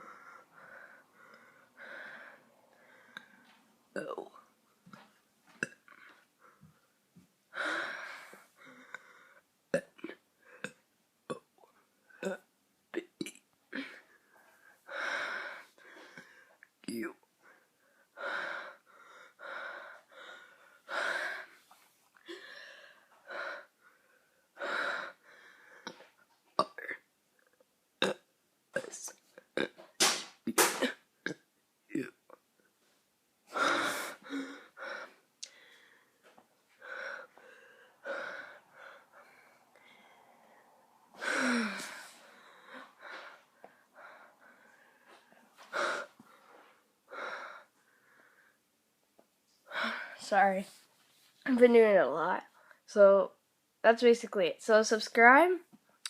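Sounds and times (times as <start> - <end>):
person burping: 4.0 - 4.4, 5.6 - 6.0, 9.7 - 11.6, 12.2 - 13.9, 26.6 - 27.1, 28.0 - 32.4
boy gasping for air: 33.5 - 48.4.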